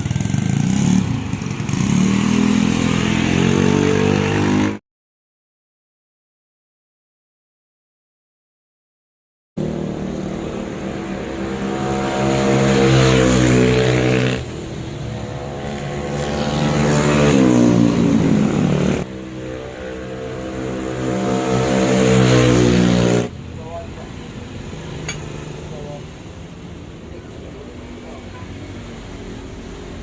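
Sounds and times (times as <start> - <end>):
scooter engine accelerating: 9.6 - 23.3.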